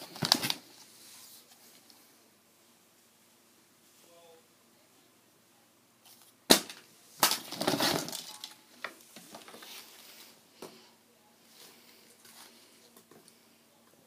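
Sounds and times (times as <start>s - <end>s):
packaging crackling and crunching: 7.2s - 8.6s.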